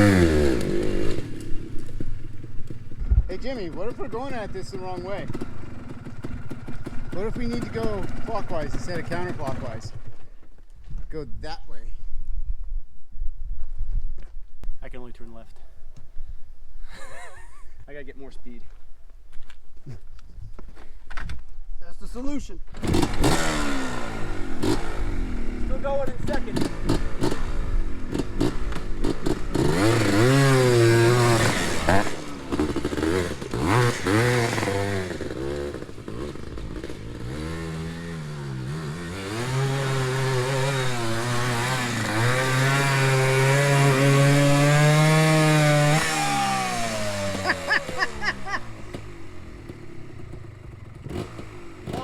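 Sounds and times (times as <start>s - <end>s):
two-stroke engine revving: 0.0s - 10.2s, 22.7s - 52.0s.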